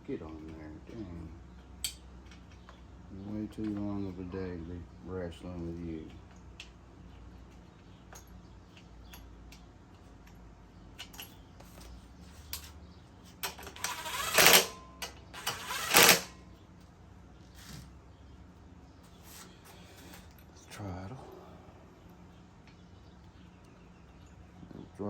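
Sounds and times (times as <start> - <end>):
loud rattling bursts: 13.4 - 16.4.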